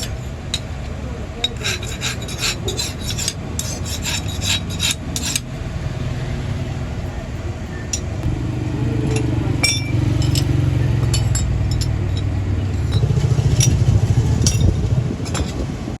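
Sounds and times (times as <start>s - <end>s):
motor running with pulsing rumble: 5.0s - 16.0s
light metallic clinks: 9.1s - 15.6s.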